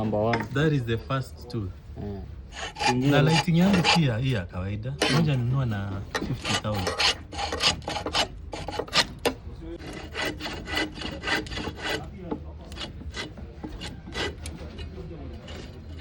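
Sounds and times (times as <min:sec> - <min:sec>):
hand tool scraping wood: 0:02.5 - 0:04.3, 0:05.0 - 0:16.0.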